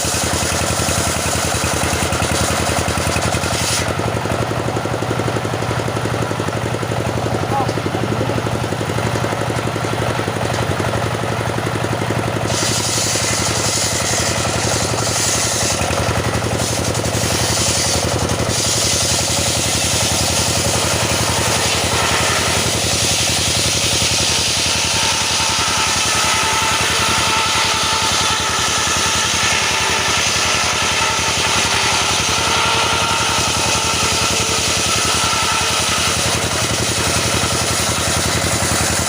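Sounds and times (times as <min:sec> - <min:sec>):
petrol saw cutting wood: 0:00.0 - 0:39.0.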